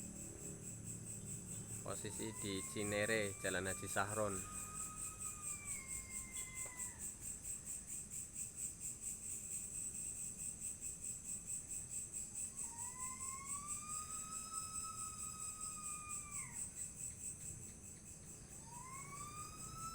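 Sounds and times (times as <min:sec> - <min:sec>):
insect trilling buzz: 0:00.0 - 0:08.6, 0:12.3 - 0:19.9.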